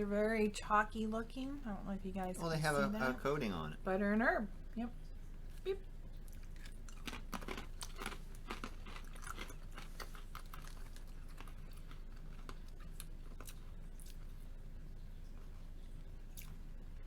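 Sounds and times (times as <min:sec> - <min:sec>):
pretzels crunching: 0:06.3 - 0:14.2.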